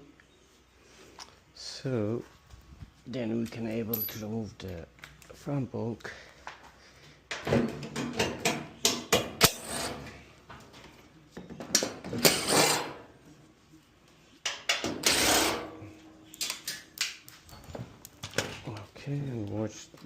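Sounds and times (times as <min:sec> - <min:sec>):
metal scraping: 0:09.4 - 0:10.2, 0:12.2 - 0:13.1, 0:14.9 - 0:16.0.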